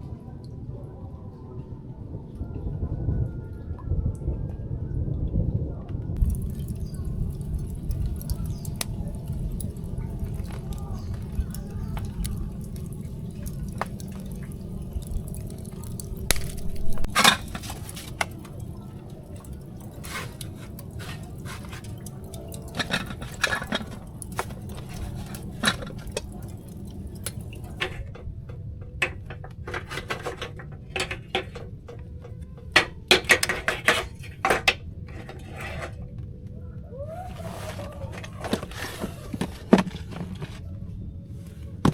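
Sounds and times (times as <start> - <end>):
steady low rumble: 0.0 - 33.1
metal utensils clinking on cookware: 6.2 - 36.0
liquid sloshing and dripping: 6.2 - 40.7.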